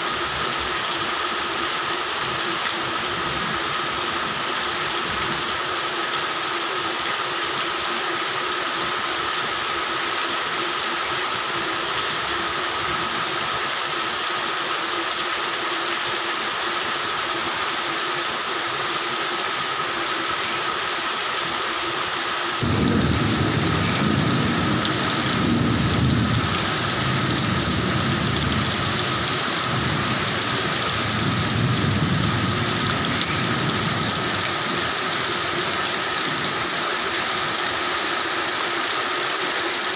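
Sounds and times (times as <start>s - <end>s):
steady rain: 0.0s - 39.9s
thunder rumbling: 22.6s - 34.9s.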